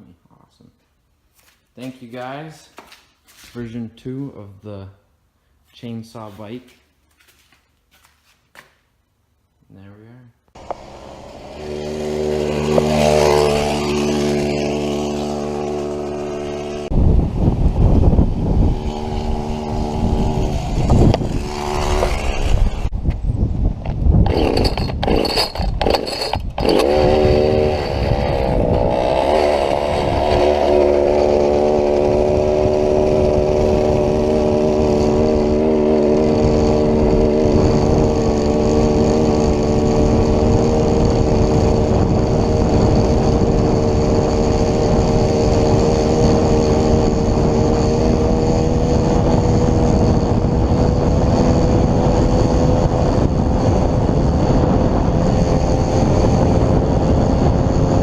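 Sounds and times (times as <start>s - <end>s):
chainsaw engine at high revs: 10.6s - 22.9s, 24.1s - 58.0s.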